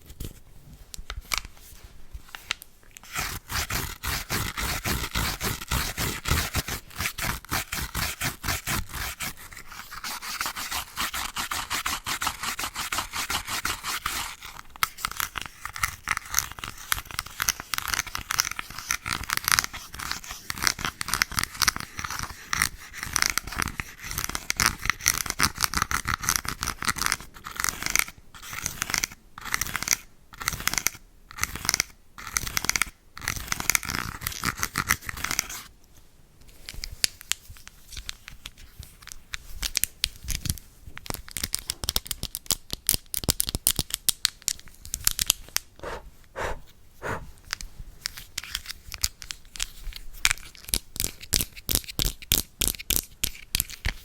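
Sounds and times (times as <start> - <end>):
brush scrubbing: 45.8 - 47.4.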